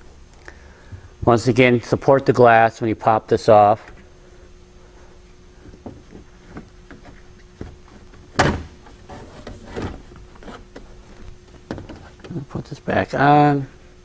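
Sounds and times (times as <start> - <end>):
knocks and scrapes of handling: 5.6 - 12.4.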